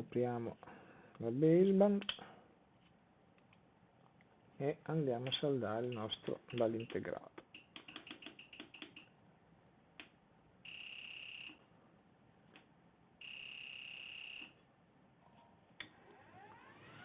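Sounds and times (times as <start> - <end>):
sharp clicks: 5.8 - 9.1
hot-air blower whine: 15.8 - 17.0.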